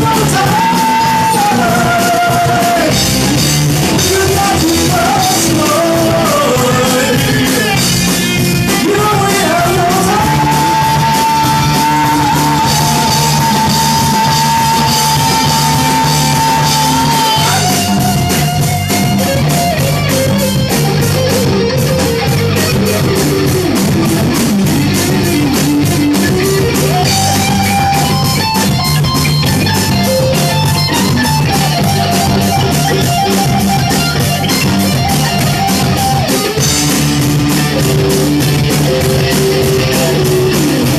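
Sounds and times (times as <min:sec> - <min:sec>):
person singing: 0:00.0 - 0:20.4, 0:24.9 - 0:36.6
drum kit beat: 0:00.0 - 0:40.9
electric guitar: 0:00.0 - 0:40.9
hard rock music: 0:00.0 - 0:40.9.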